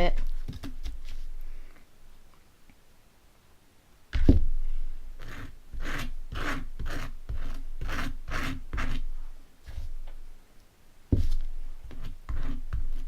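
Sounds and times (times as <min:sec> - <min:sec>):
knife scraping butter on toast: 0:05.2 - 0:09.0, 0:11.9 - 0:13.0.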